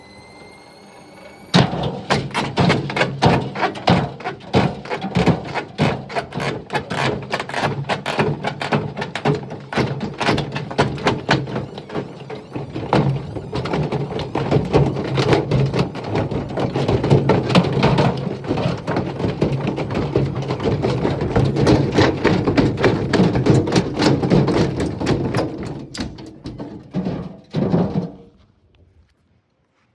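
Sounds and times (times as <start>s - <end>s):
high steady tone: 0.0s - 1.6s
brick banging in washing machine drum: 1.6s - 28.3s.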